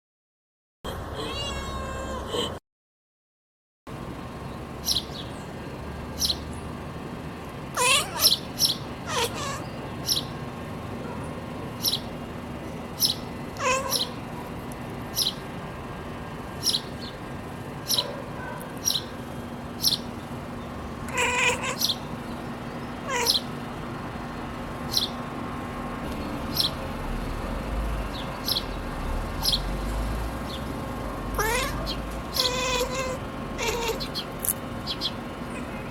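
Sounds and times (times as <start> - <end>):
cat chirping: 1.2 - 2.5, 7.8 - 10.3, 13.0 - 14.3, 15.2 - 15.4, 16.6 - 17.1, 17.8 - 18.1, 21.1 - 22.2, 23.0 - 23.6, 31.4 - 35.8
high bird chirps: 4.8 - 5.6, 6.2 - 6.7, 7.8 - 10.5, 11.8 - 14.3, 15.1 - 15.5, 16.5 - 18.1, 18.8 - 19.2, 19.8 - 23.6, 24.3 - 25.2, 28.1 - 28.8, 31.4 - 35.9.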